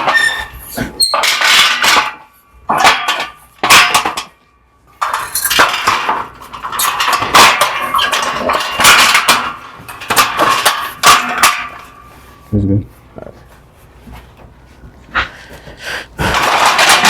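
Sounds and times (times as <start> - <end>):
metal scaffold parts clanking: 0.0 - 12.5, 16.2 - 17.0.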